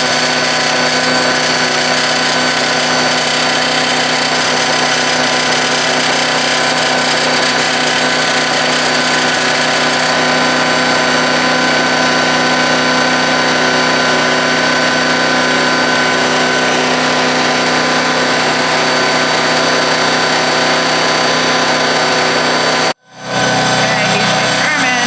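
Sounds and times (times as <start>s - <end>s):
wood chipper engine running: 0.0s - 25.0s.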